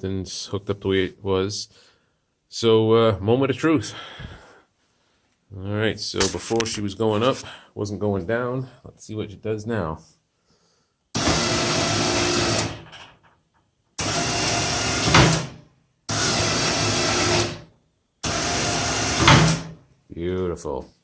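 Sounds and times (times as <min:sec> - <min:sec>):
electric winch running: 0:11.2 - 0:13.0, 0:14.0 - 0:19.7.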